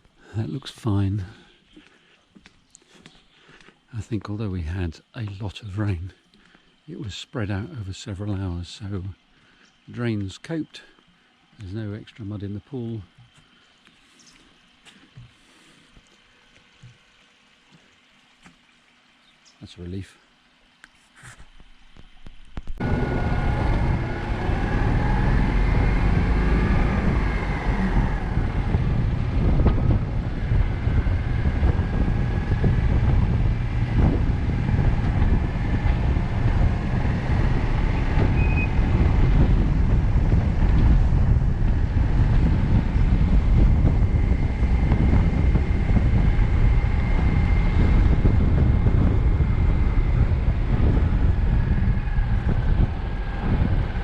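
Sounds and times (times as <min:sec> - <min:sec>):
vehicle engine and road rumble: 0:22.0 - 0:54.0.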